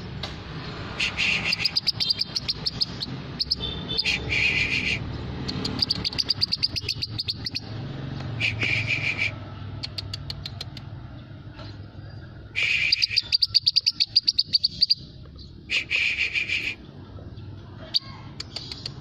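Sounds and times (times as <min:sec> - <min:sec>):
buzzy bird trill: 0:01.0 - 0:09.4, 0:12.4 - 0:16.8
songbird chipping notes: 0:01.3 - 0:04.3, 0:05.5 - 0:08.8.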